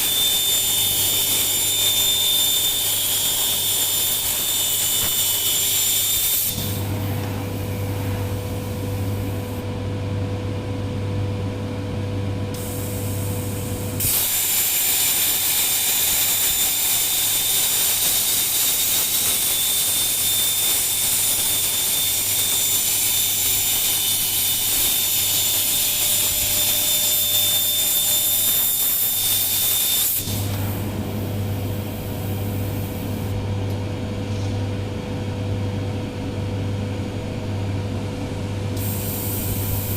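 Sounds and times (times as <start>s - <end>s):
machine hum: 6.5s - 14.1s, 30.2s - 39.9s
plasma arc hissing: 14.0s - 30.7s, 38.8s - 39.9s.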